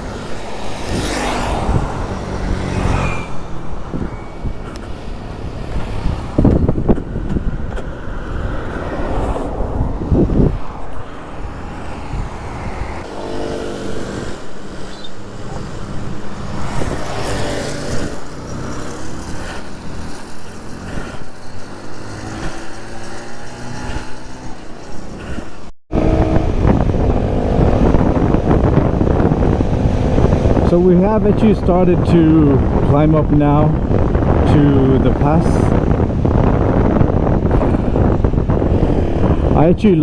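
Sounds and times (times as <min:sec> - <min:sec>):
road rumble: 0:00.0 - 0:40.0
wind buffeting microphone: 0:00.0 - 0:40.0
motorbike engine running: 0:12.0 - 0:39.6.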